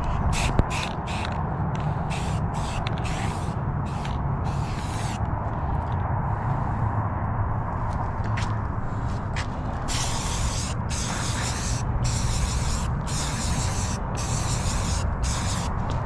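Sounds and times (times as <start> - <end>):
aerosol spray can spraying: 0.4 - 1.4, 2.1 - 5.2, 9.9 - 15.7.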